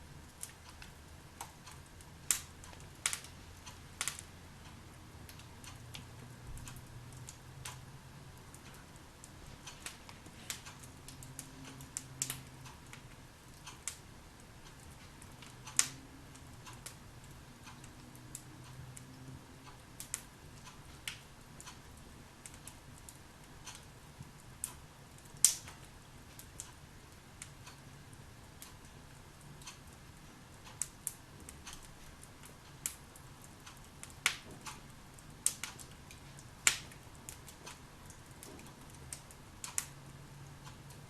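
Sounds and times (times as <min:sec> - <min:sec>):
logs crackling in fireplace: 0:00.0 - 0:41.0
sharp fire pops: 0:02.3 - 0:03.4, 0:04.0 - 0:04.3, 0:25.4 - 0:25.8, 0:35.4 - 0:37.8.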